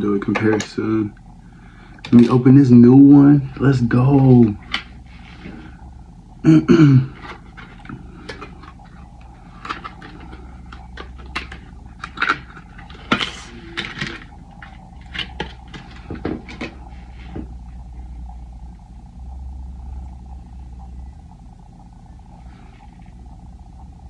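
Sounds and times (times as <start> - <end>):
steady background hum: 0.0 - 24.0
packaging clicks and crinkles: 7.2 - 16.8.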